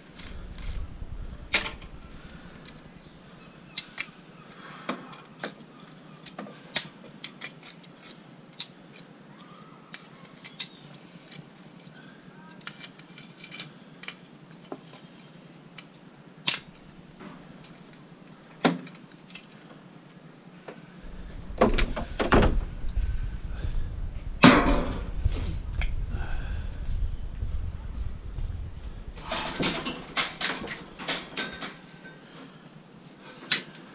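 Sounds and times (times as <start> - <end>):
low rumble: 0.0 - 3.3, 21.0 - 30.8
heavy metal clattering: 21.1 - 25.2, 28.6 - 31.8.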